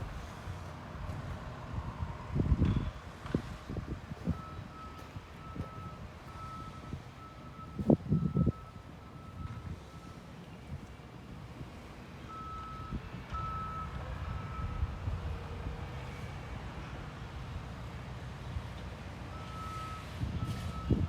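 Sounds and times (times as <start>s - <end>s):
back-up alarm beeping: 4.3s - 10.2s.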